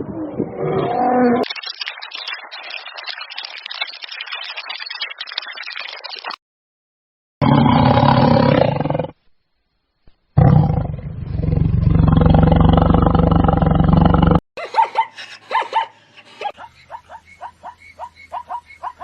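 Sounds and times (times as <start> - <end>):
large animal roaring: 7.4 - 9.2, 10.4 - 14.4.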